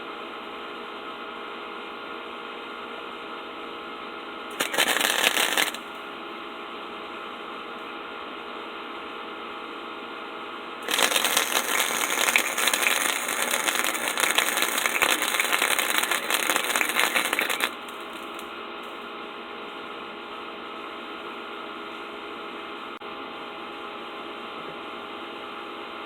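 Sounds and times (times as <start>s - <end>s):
dense crackling rattling noise: 4.6s - 5.8s, 10.8s - 18.5s
steady hum: 10.8s - 18.5s.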